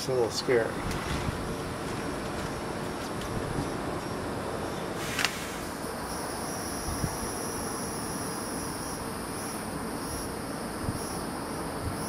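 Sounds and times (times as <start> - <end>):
high-pitched insect buzzing: 5.6 - 12.0.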